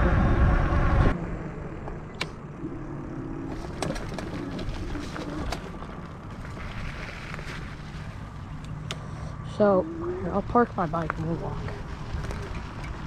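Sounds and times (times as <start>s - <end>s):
bicycle tyres rumbling: 0.0s - 13.0s
bike clicks and rattles: 3.5s - 9.1s, 10.6s - 13.0s.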